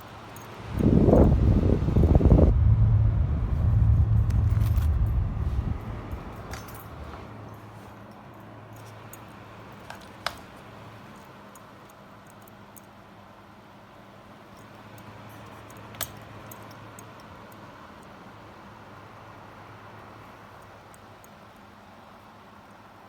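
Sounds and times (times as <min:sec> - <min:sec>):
fan airflow buffeting microphone: 0:00.0 - 0:11.1.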